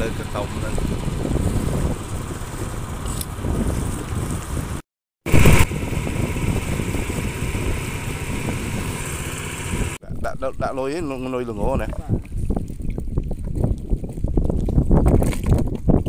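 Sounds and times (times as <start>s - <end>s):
small boat motor running: 0.0s - 10.0s.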